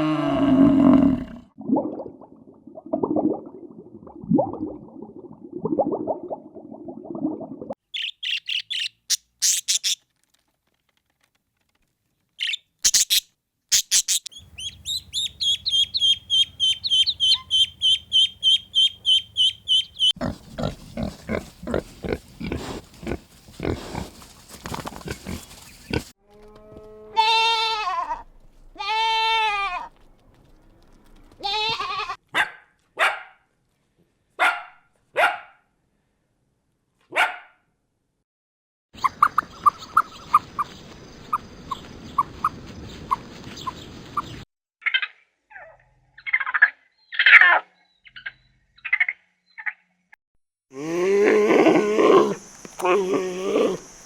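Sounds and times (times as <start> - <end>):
bird trilling: 7.9 - 10.0, 12.4 - 20.2
quick pulsed animal calls: 8.0 - 10.0, 12.4 - 20.2
short high chirps: 12.5 - 20.1
animal bleating: 26.3 - 28.2, 28.8 - 29.9, 31.4 - 32.2
low animal calls: 50.8 - 54.0.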